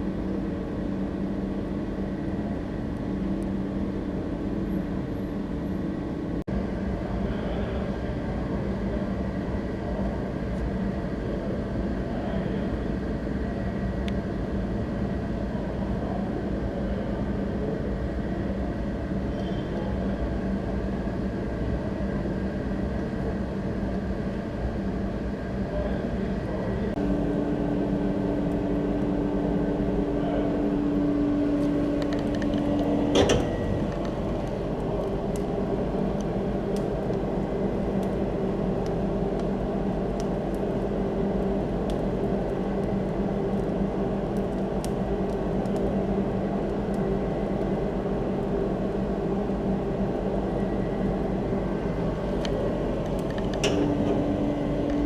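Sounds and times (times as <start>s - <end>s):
air blower humming: 27.0s - 39.4s, 51.2s - 55.0s.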